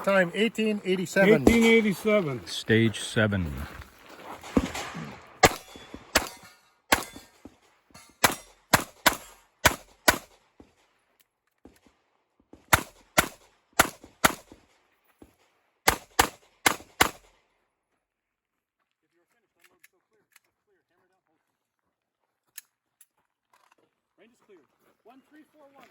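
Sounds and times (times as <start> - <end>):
pistol firing rapid shots: 4.6 - 7.3, 8.2 - 10.4, 12.7 - 14.5, 15.9 - 17.3.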